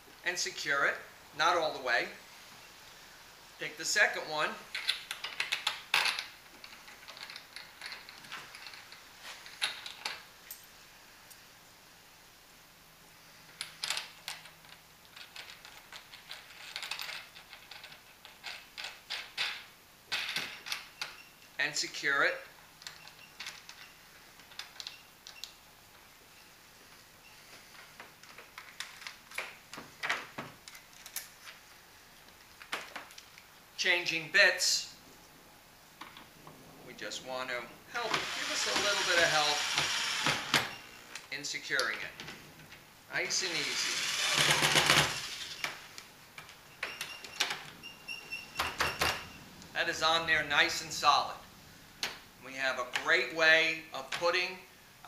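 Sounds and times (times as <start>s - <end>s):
metal hardware clicking and scraping: 4.7s - 11.4s, 13.5s - 21.2s, 22.8s - 25.5s.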